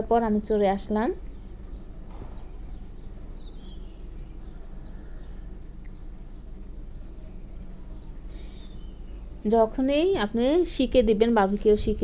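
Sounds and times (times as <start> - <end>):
low background hum: 0.0 - 12.0
faint bird chirps: 0.9 - 10.1.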